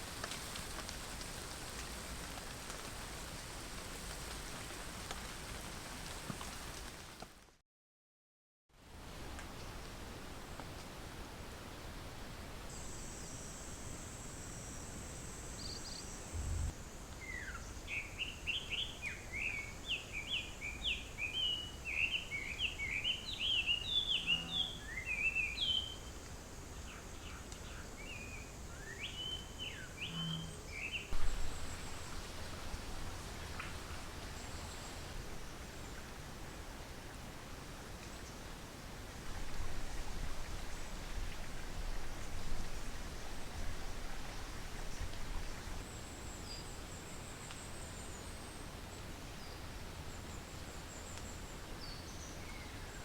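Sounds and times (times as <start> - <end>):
outdoor hiss: 0.0 - 7.4, 8.8 - 24.2, 30.7 - 53.0
songbird chirping: 26.8 - 36.1.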